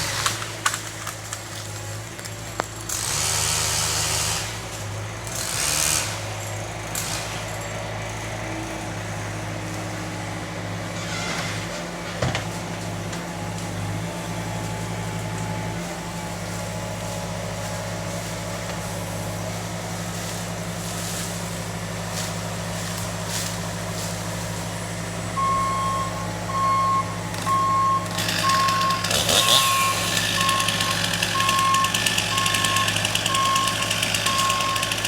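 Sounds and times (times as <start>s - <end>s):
heavy vehicle engine running: 0.0s - 35.0s
reversing alarm beeping: 25.3s - 35.0s.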